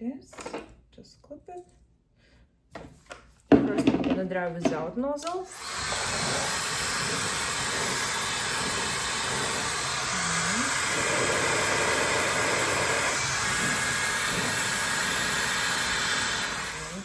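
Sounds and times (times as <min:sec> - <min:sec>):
hair dryer blowing air: 0:05.5 - 0:17.0.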